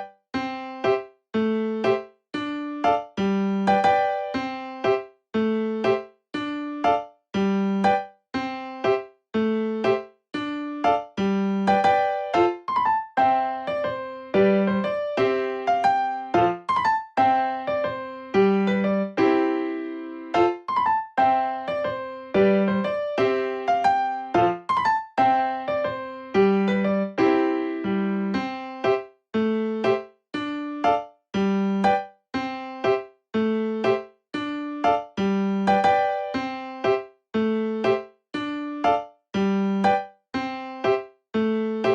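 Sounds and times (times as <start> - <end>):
electric piano melody: 0.0 - 41.9.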